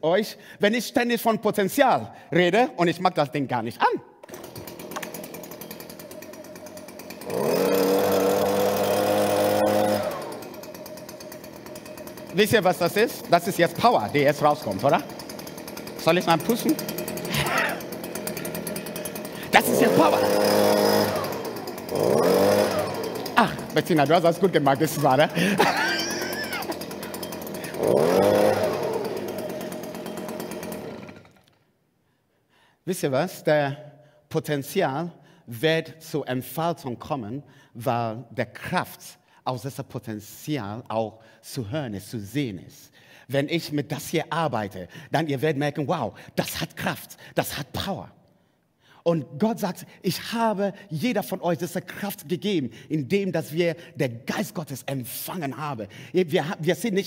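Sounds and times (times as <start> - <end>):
garden power tool droning: 4.2 - 31.6
small motor running: 4.2 - 31.6.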